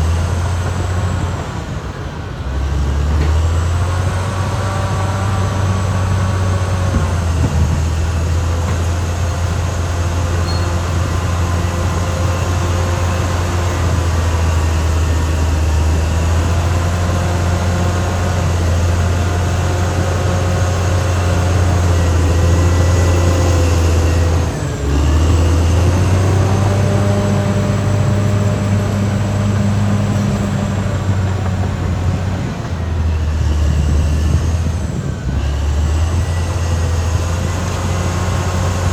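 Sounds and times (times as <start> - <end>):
bulldozer diesel engine drone: 0.0 - 38.9
metallic whines from running gear: 9.5 - 13.8.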